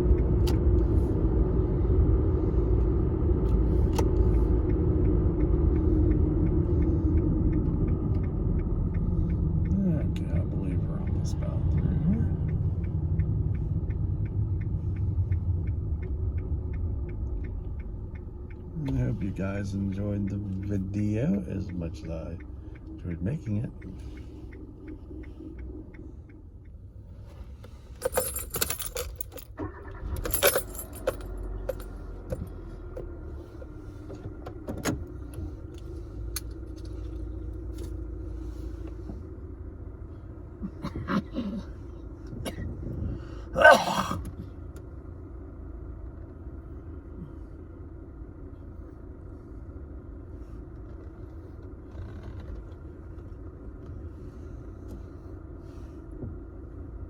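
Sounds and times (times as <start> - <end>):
steady low hum: 0.0 - 57.0
jingling and clattering handling: 27.9 - 32.3.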